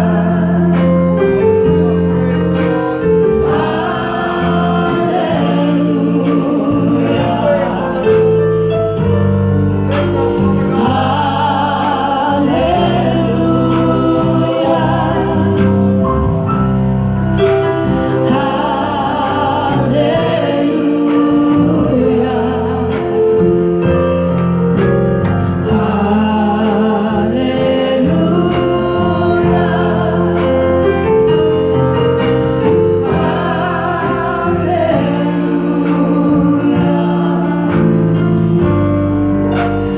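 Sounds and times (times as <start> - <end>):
long held instrumental chords: 0.0 - 39.9
voices singing gospel melody: 0.0 - 39.9.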